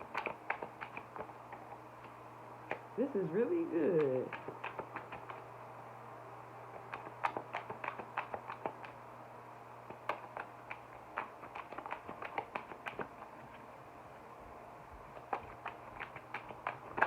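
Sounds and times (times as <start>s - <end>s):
cards shuffling clicks and taps: 0.0s - 2.8s, 4.0s - 5.4s, 6.8s - 9.0s, 9.9s - 13.6s, 15.0s - 17.0s
faint steady hum: 0.0s - 17.0s.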